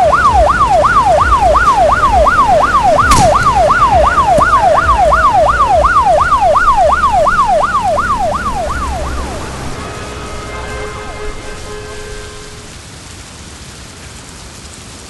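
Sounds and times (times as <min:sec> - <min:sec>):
emergency siren yelping: 0:00.0 - 0:11.7
low vehicle rumble: 0:00.0 - 0:12.8.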